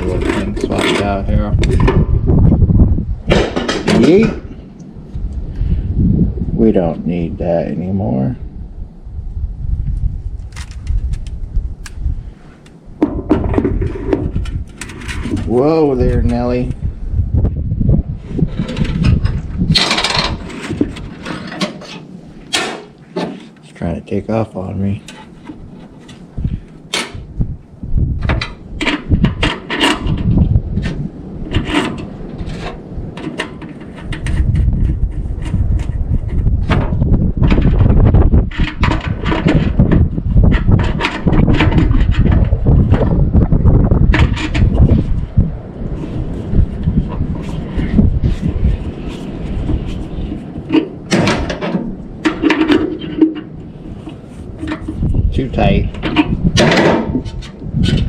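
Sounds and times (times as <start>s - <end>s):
hands handling wire spool: 0.0s - 2.0s, 10.4s - 16.8s, 44.1s - 58.0s
rustling and bumping of wire spool: 0.0s - 5.8s, 9.9s - 23.7s, 25.0s - 58.0s
metallic knocks and clacks: 3.3s - 4.4s, 18.6s - 23.4s, 50.7s - 53.6s, 55.8s - 57.6s.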